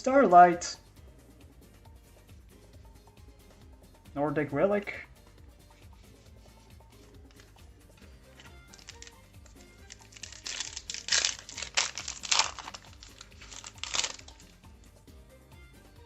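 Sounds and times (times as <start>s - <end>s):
quiet background music: 0.0s - 16.0s
foil wrapper crinkling: 8.4s - 14.6s.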